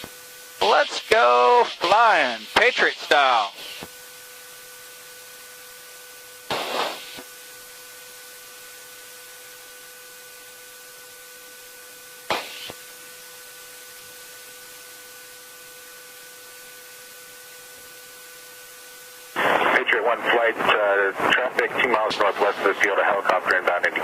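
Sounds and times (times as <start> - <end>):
intercom hiss: 0.0 - 3.9, 6.5 - 7.3, 12.3 - 12.8, 19.3 - 24.0
faint hum: 0.0 - 24.0
short noise bursts: 6.5 - 7.3, 12.3 - 12.8.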